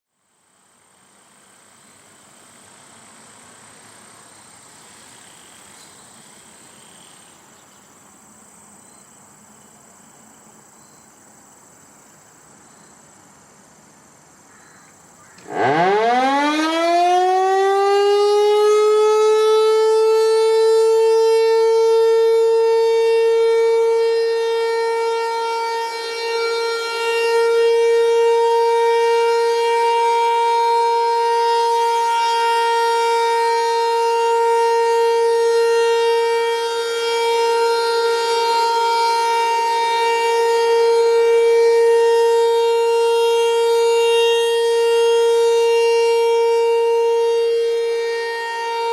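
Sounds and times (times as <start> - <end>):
warning siren steady tone: 15.2 - 48.9.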